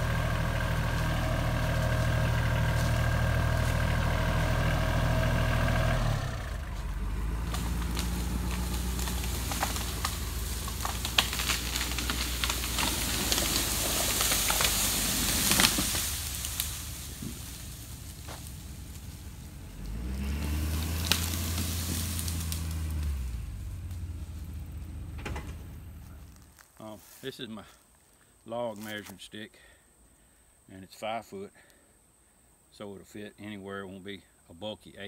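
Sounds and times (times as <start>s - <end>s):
tractor engine running: 0.0s - 26.6s.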